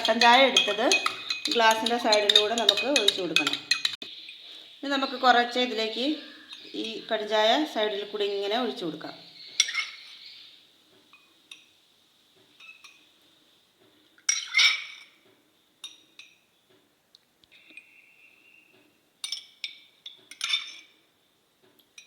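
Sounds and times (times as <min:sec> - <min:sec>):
glass and utensils clinking: 0:00.0 - 0:04.0, 0:09.6 - 0:10.2, 0:12.6 - 0:13.0, 0:14.2 - 0:15.2, 0:19.2 - 0:21.0.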